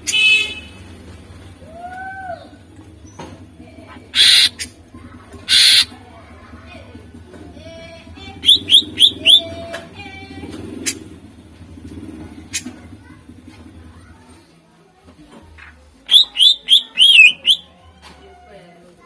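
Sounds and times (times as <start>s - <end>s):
bird singing: 3.9s - 4.7s, 5.5s - 5.9s, 8.4s - 9.6s, 16.1s - 17.8s
harsh rasping bird calls: 3.9s - 6.0s, 8.4s - 9.5s, 15.6s - 17.8s
sharp whistled bird notes: 4.2s - 4.7s, 5.5s - 5.9s, 8.4s - 9.5s, 16.1s - 17.7s.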